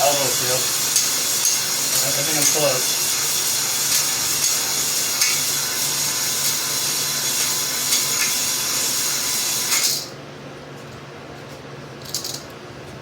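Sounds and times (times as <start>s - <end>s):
drill motor hum: 0.0s - 10.0s.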